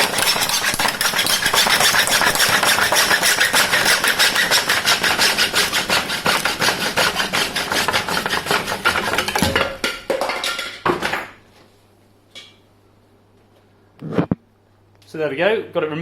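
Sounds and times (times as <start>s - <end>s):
tool rasping through carbon frame: 0.0s - 9.4s.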